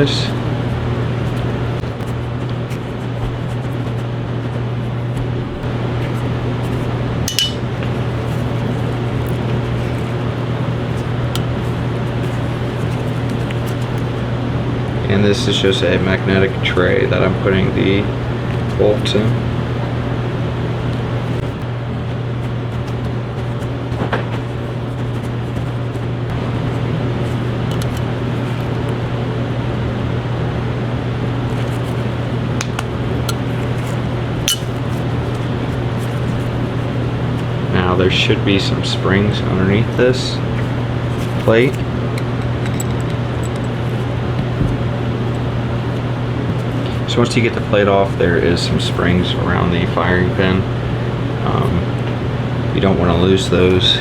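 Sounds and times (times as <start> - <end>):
steady low hum: 0.0 - 54.0
metal bolt clinking into tray: 42.2 - 43.7.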